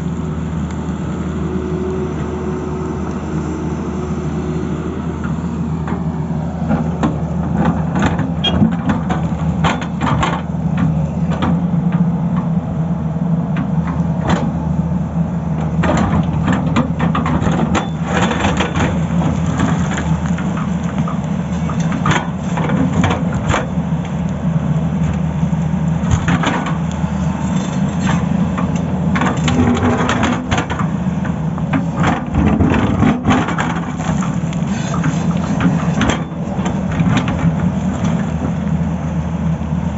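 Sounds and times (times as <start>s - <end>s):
excavator diesel engine running: 0.0s - 39.9s
bucket cracking road surface: 26.0s - 38.6s.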